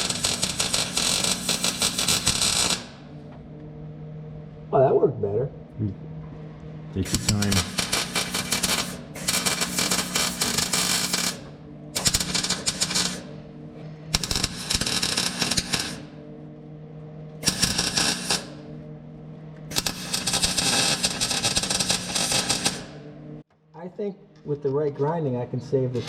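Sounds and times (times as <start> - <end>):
welder crackling and sputtering: 0.0 - 3.1, 7.0 - 13.3, 14.1 - 16.2, 17.4 - 18.6, 19.7 - 23.0
steady low hum: 0.0 - 21.7.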